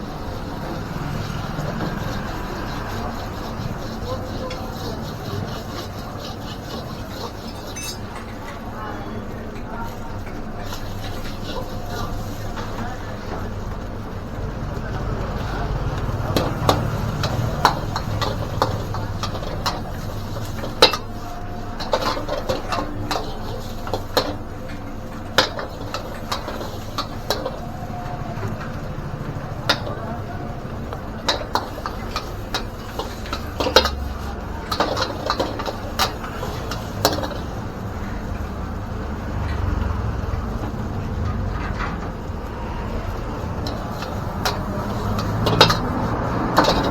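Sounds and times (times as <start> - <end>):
metal spatula clanging against wok: 6.6 - 8.4, 16.3 - 21.2, 21.8 - 24.4, 25.4 - 27.6, 31.3 - 34.1, 43.6 - 45.9, 46.6 - 46.9.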